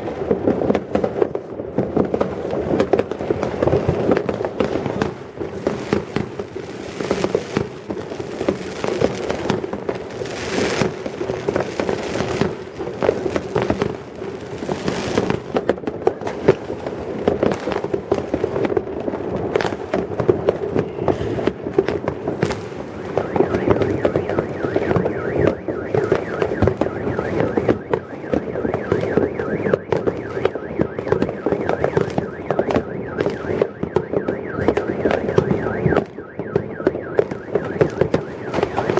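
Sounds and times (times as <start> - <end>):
fireworks bangs and crackles: 0.0 - 38.9
fireworks hiss: 21.1 - 23.2.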